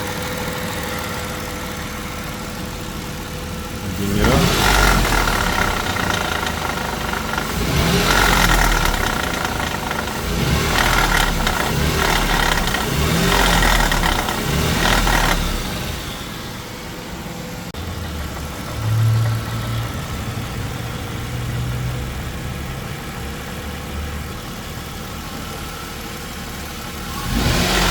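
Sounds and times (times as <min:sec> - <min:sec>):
exhaust rattle: 0:00.0 - 0:25.1
car engine idling: 0:00.0 - 0:27.9
car engine revving: 0:02.6 - 0:22.9, 0:27.0 - 0:27.9.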